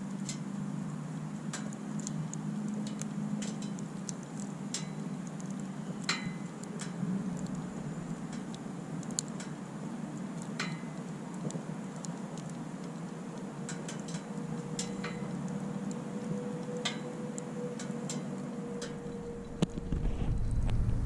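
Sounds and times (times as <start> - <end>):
campfire crackling and popping: 0.0 - 21.0
steady low hum: 14.2 - 21.0.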